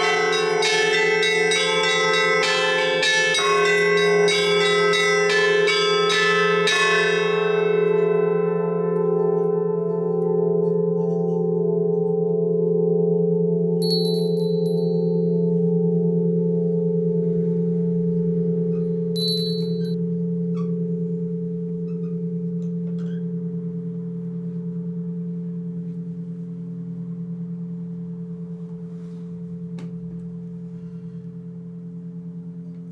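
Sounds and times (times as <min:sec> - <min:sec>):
short high-pitched chirps: 0:13.8 - 0:14.9, 0:19.2 - 0:20.0.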